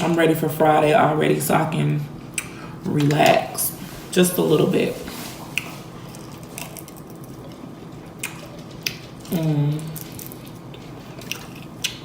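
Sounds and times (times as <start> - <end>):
wet chewing and smacking: 5.2 - 12.0.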